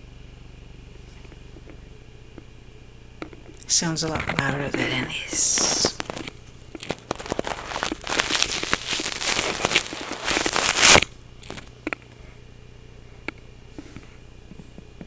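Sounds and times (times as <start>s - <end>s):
steady low hum: 0.0s - 15.0s
distorted crackling and scratching: 3.6s - 11.7s.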